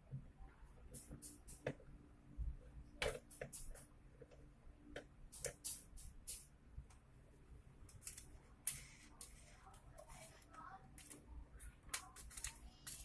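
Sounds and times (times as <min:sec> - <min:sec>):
small parts clicking and tapping: 0:03.0 - 0:06.5, 0:07.9 - 0:13.0.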